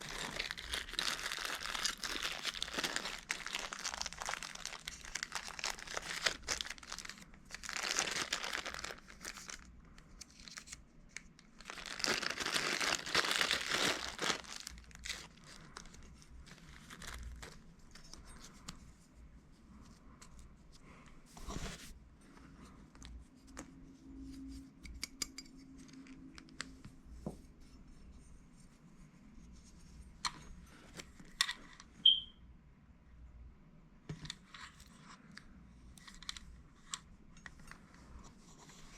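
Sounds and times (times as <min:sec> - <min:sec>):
packaging being torn: 0:00.0 - 0:09.7, 0:11.6 - 0:17.6
packaging crinkling: 0:00.0 - 0:09.7, 0:11.4 - 0:17.6.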